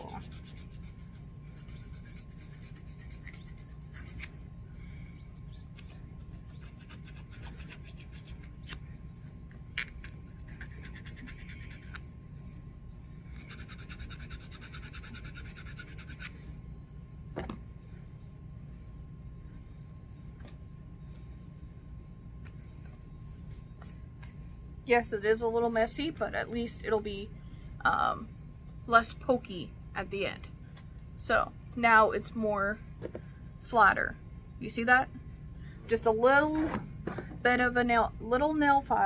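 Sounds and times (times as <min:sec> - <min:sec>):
nail file rubbing back and forth: 0:00.0 - 0:04.4, 0:05.8 - 0:08.8, 0:09.8 - 0:12.0, 0:13.3 - 0:16.4.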